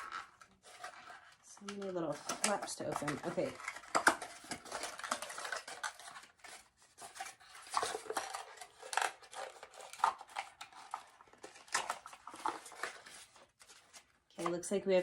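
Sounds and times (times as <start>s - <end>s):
cardboard packaging being opened: 0.0s - 14.4s.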